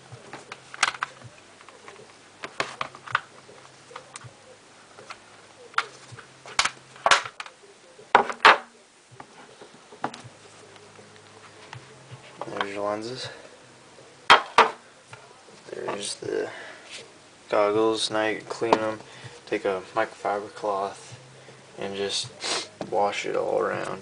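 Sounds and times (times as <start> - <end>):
plastic clicks and snaps: 0.7 - 3.3, 6.5 - 7.6.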